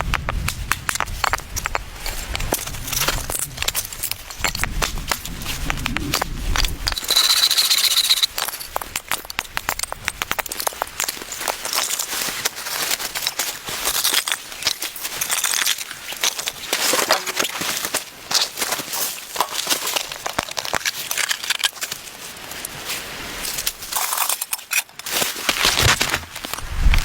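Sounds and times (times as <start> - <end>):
crackling and crunching: 0.0 - 27.0
low rumble: 1.5 - 7.3.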